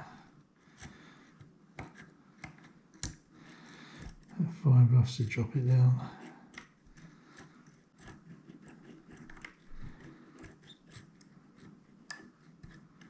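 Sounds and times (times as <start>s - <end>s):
lock pick clicking and scraping: 0.8s - 3.3s, 6.2s - 13.0s.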